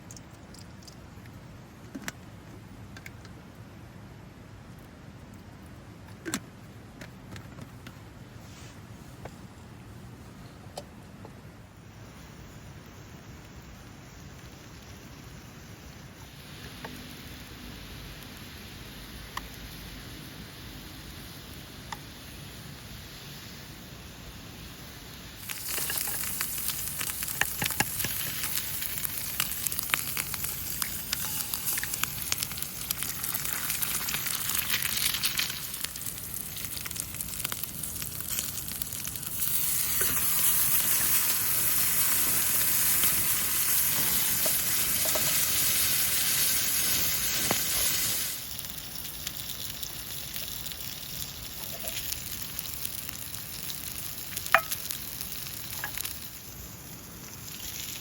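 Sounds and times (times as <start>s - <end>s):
food sizzling in a pan: 11.9s - 58.0s.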